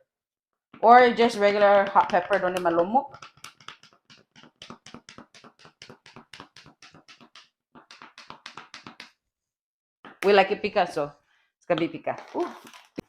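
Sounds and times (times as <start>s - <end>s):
spice shaker tapping: 1.9s - 9.2s.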